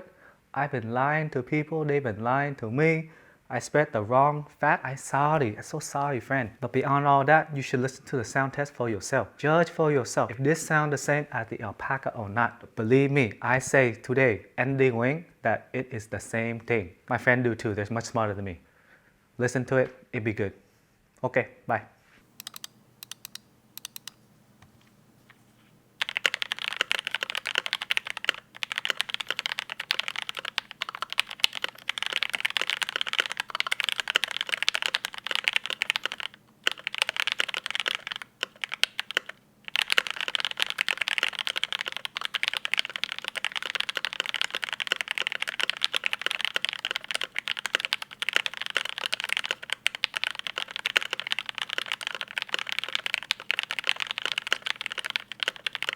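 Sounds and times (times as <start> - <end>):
mechanical keyboard typing: 22.4 - 24.2, 26.0 - 55.9.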